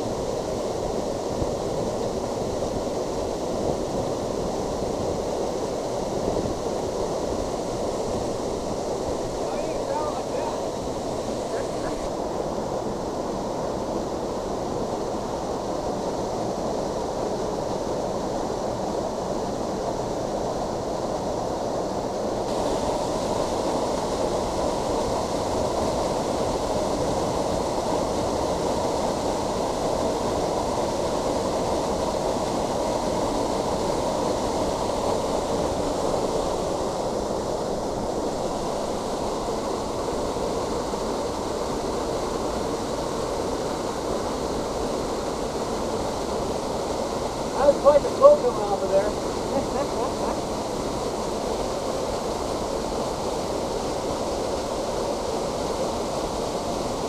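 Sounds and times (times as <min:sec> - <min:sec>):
waterfall rushing: 0:07.4 - 0:12.4, 0:22.5 - 0:57.0.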